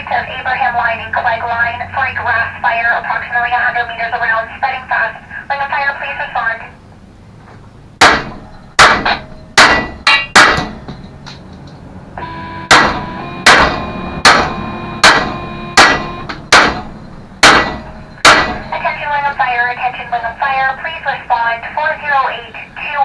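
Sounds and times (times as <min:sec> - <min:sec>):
hammer striking metal: 0:08.0 - 0:19.0.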